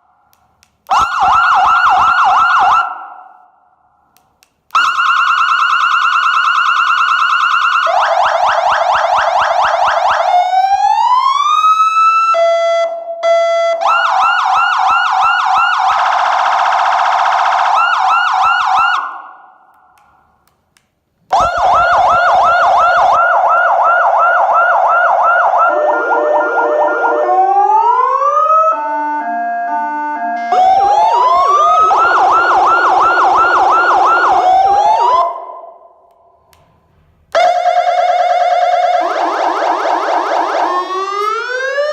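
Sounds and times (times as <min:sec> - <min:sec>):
electronic siren cycling tones: 0:21.3 - 0:35.7, 0:37.4 - 0:41.9.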